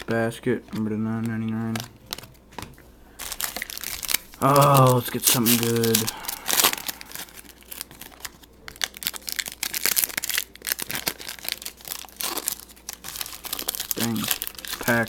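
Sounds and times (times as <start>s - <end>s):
cards being shuffled: 0.0s - 9.2s
wrapper crinkling and tearing: 3.1s - 15.0s.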